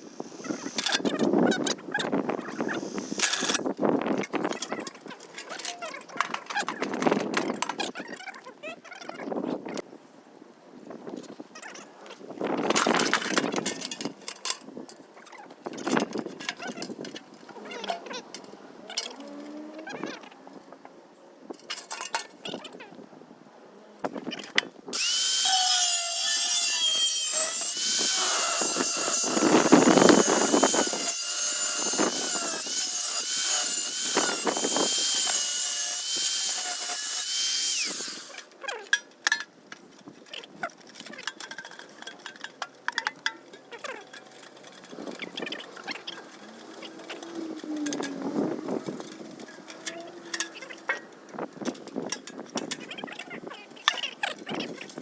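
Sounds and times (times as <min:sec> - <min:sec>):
power tool cutting thin metal: 0:00.1 - 0:01.1, 0:02.5 - 0:03.6, 0:25.0 - 0:38.5.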